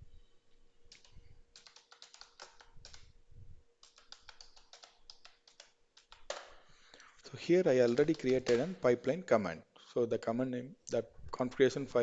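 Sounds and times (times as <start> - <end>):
faint steady hum: 0.0 - 12.0
keyboard typing: 0.9 - 3.1, 3.8 - 6.5, 7.7 - 8.8.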